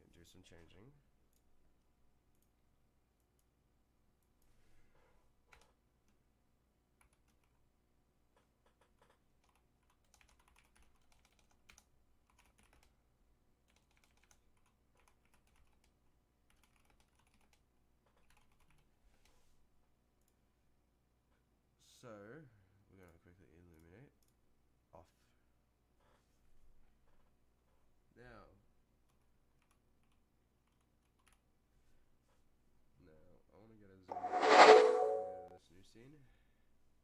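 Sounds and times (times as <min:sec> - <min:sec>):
mechanical keyboard typing: 0:09.0 - 0:12.9, 0:13.7 - 0:15.9, 0:16.5 - 0:18.9.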